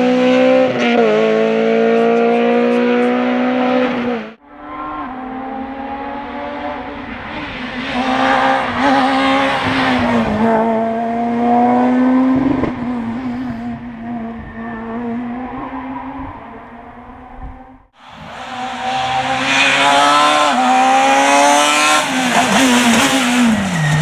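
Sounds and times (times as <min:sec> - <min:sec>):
rally car engine revving: 0:00.0 - 0:24.0.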